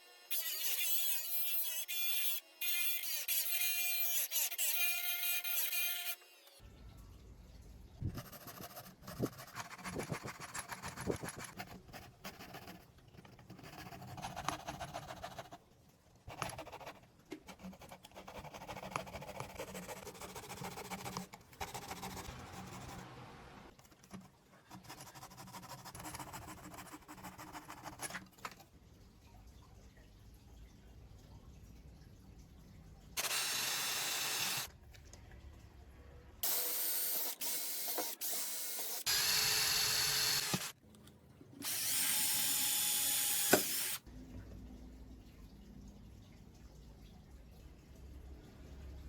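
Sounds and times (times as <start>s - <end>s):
scraping and rubbing: 8.1s - 12.0s.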